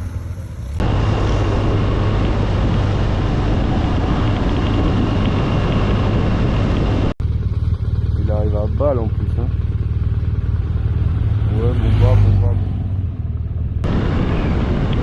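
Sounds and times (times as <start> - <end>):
motorcycle engine drone: 0.0 - 15.0
wind rush on microphone: 0.8 - 7.2, 13.8 - 15.0.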